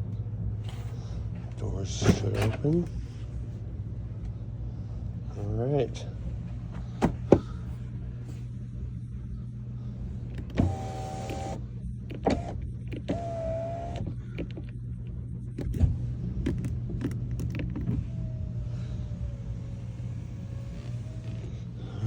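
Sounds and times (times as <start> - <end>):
electric door motor whining: 10.2 - 14.9, 15.5 - 22.0.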